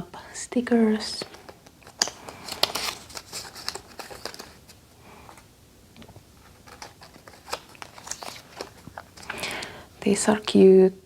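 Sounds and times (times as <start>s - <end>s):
paper rustling: 1.2s - 5.4s, 6.4s - 9.4s.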